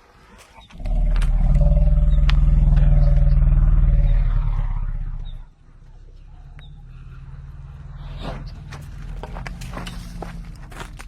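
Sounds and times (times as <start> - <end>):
elephant growling: 0.7 - 5.5
low rumble: 0.7 - 11.0.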